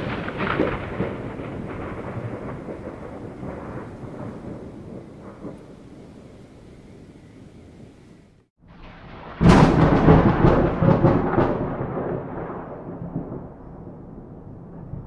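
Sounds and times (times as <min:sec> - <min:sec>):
thunderclap with sharp cracks: 0:00.0 - 0:07.9, 0:08.6 - 0:15.0
steady rain hiss: 0:00.0 - 0:08.5
thunder rumbling: 0:00.0 - 0:15.0.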